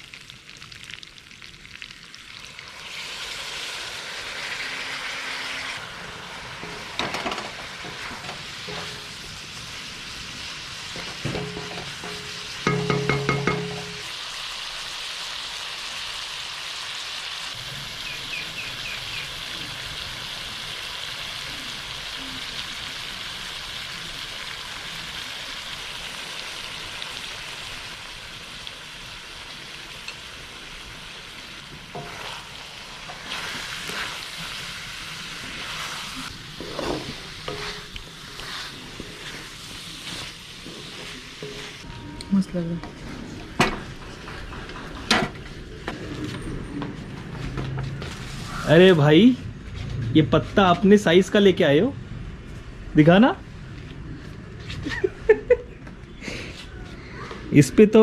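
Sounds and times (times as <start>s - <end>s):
chicken sizzling in oil: 0.0s - 41.9s
spatula scraping a pan: 7.8s - 9.2s, 31.9s - 34.7s, 35.4s - 41.9s.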